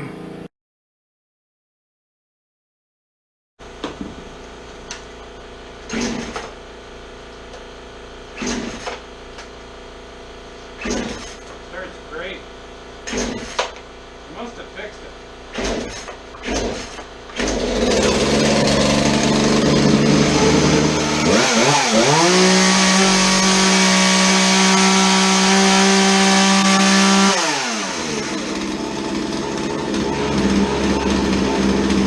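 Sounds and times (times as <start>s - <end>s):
chainsaw idling and revving: 15.4s - 32.0s.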